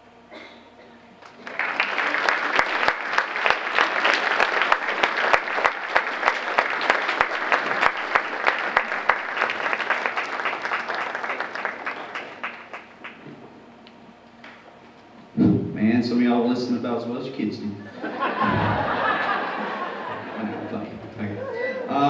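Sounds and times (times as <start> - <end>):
audience applauding: 1.2 - 13.5, 18.2 - 21.8.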